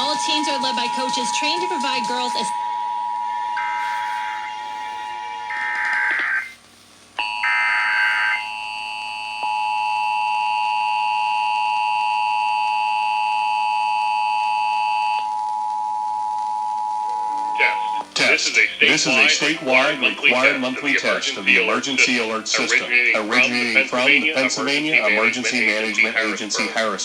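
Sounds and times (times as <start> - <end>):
two-tone attention signal: 0.0 - 6.6
raspy digital data bursts: 3.6 - 6.6.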